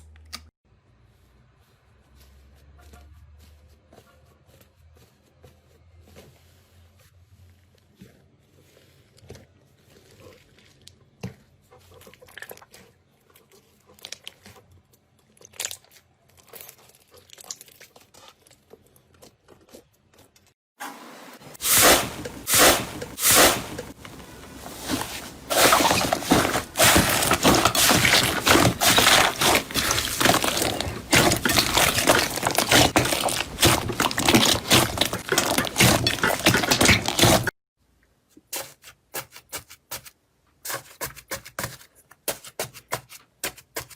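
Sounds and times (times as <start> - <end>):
slime crackling and popping: 25.6 - 37.5.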